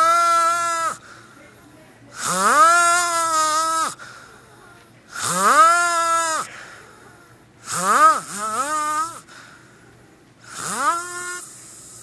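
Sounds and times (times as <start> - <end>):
man snoring with high whine: 0.0 - 1.0, 2.2 - 4.0, 5.1 - 6.6, 7.6 - 9.4, 10.4 - 12.0.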